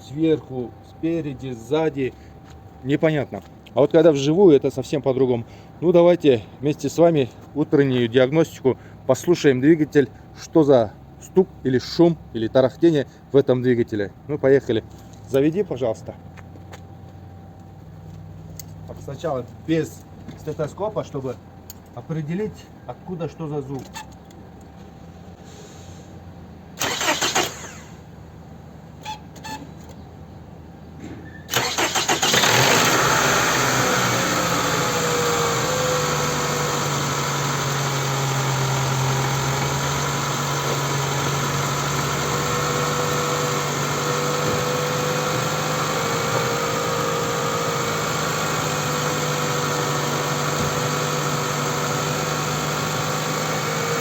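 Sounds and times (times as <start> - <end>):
car engine cranking and idling: 26.5 - 30.0, 31.5 - 54.0.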